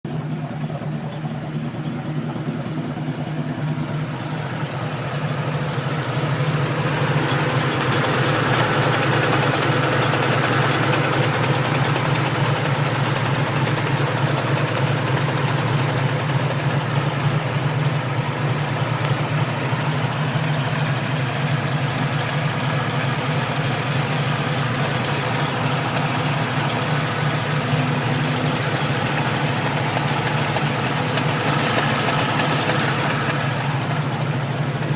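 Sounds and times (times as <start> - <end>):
car engine idling with exhaust leak: 0.0 - 34.9.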